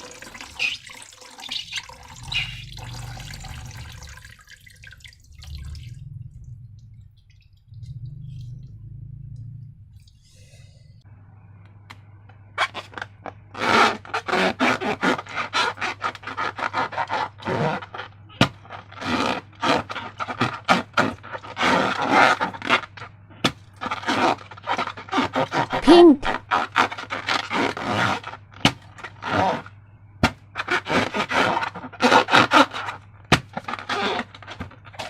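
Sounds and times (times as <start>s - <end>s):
slime squelching by hand: 0.0s - 6.1s, 23.8s - 29.6s
low electrical hum: 0.0s - 14.2s, 28.2s - 30.7s
short squeak: 0.5s - 2.7s.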